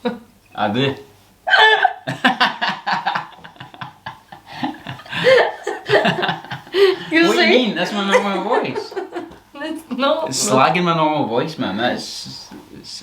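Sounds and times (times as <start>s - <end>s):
people laughing: 1.5s - 9.4s
people talking: 7.0s - 13.0s.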